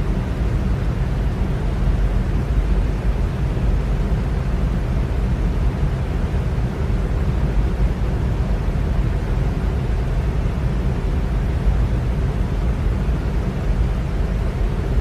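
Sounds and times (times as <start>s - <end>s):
electric fan running: 0.0s - 15.0s.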